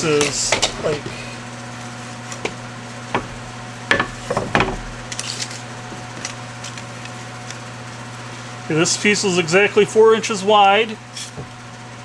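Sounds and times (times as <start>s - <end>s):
wooden board knocks and scrapes: 0.0s - 1.4s, 2.4s - 5.2s.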